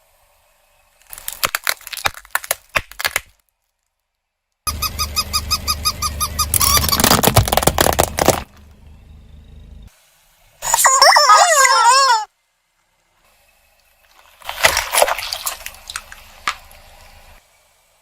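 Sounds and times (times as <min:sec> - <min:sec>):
sharp cracks and pops: 0:01.0 - 0:04.2, 0:06.5 - 0:08.7
rapid squeaks: 0:04.7 - 0:08.7
low hum: 0:04.7 - 0:09.9
dense crackling: 0:06.5 - 0:08.8.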